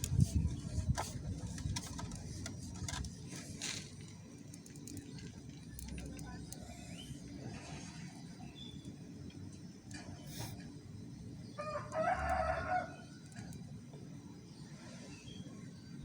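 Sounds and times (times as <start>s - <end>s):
rooster crowing: 11.6s - 13.1s.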